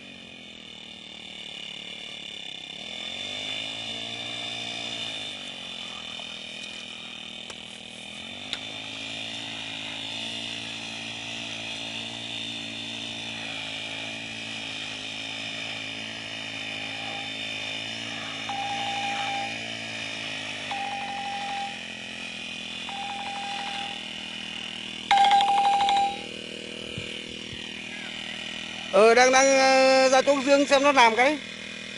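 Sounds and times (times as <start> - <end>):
brush cutter engine running: 0.0 - 31.9
high tone: 18.4 - 19.7, 20.6 - 21.9, 22.8 - 24.1, 25.1 - 26.3.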